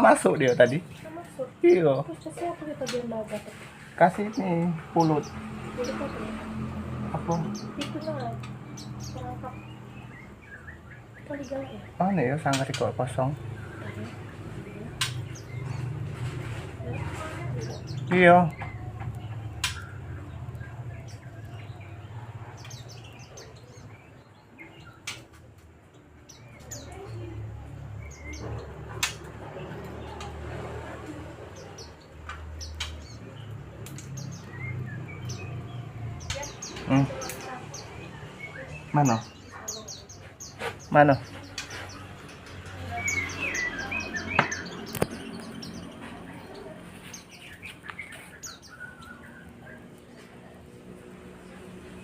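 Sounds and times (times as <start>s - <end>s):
birds chirping: 0.0s - 52.0s
sharp clicks: 15.0s - 15.4s, 29.0s - 29.3s.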